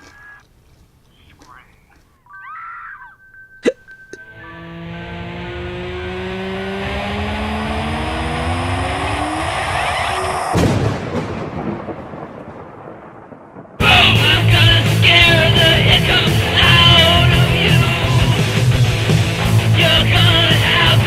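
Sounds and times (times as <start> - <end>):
rush of noise with rising tones: 4.3 - 10.6
sudden crash: 9.0 - 15.9
rumble: 9.0 - 20.8
loud rock music: 13.8 - 21.0.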